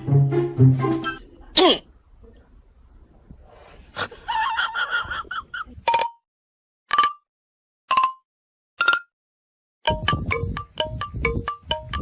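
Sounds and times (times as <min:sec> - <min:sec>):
marimba-like notes: 0:09.9 - 0:12.0.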